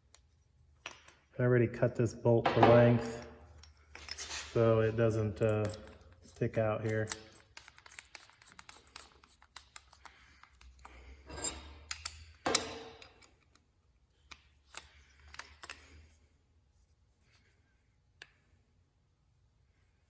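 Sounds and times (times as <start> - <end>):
steel parts clicking and scraping: 3.0 - 16.2.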